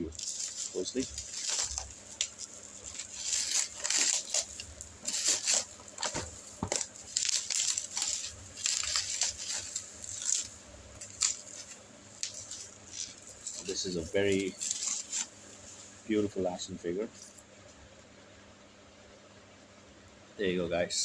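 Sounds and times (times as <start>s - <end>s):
plastic wrapping crinkling: 0.0s - 16.3s.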